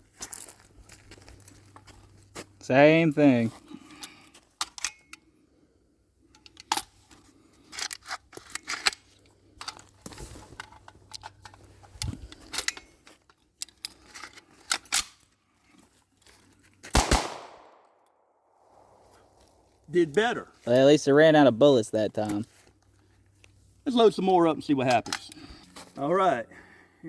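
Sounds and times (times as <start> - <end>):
rifle gunshots: 16.9 - 17.8
gunshot echo: 17.0 - 18.0.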